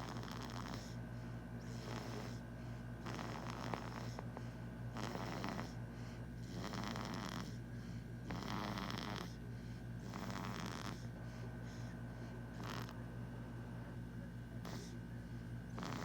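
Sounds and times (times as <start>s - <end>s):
steady low hum: 0.0s - 16.0s
person snoring: 3.0s - 4.2s, 5.0s - 5.8s, 6.4s - 7.6s, 8.3s - 9.4s, 10.0s - 11.0s, 12.6s - 13.0s, 15.8s - 16.0s.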